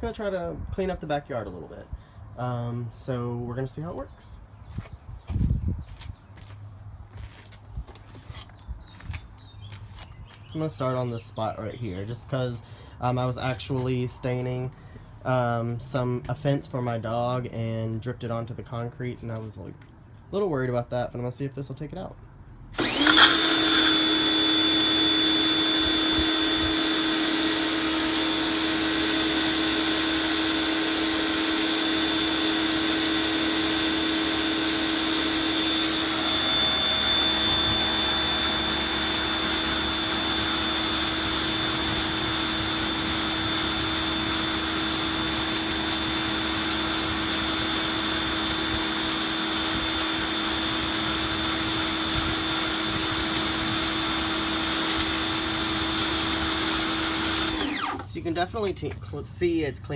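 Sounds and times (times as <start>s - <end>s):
pressure washer motor whine: 22.8s - 59.2s
water spray hissing on concrete: 23.0s - 59.3s.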